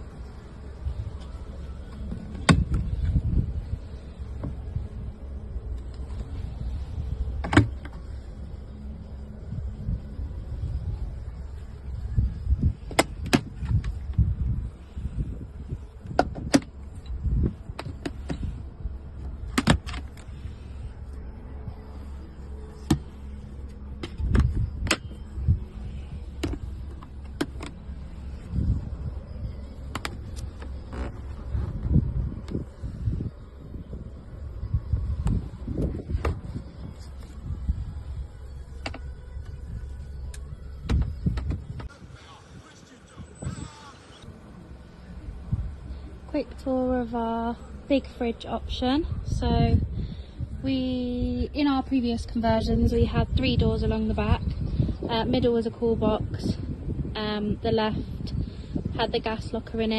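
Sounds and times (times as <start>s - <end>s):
low rumble: 0.0s - 42.4s.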